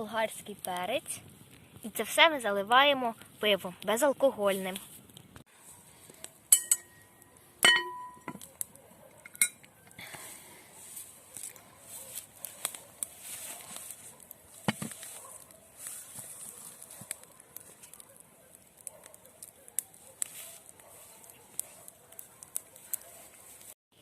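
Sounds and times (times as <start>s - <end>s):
cookware clinking: 6.5s - 8.4s, 9.3s - 9.6s
faint crackling: 8.4s - 23.8s.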